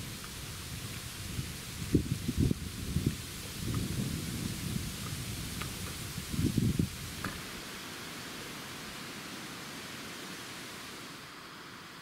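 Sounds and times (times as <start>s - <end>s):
rain hiss: 0.0s - 12.0s.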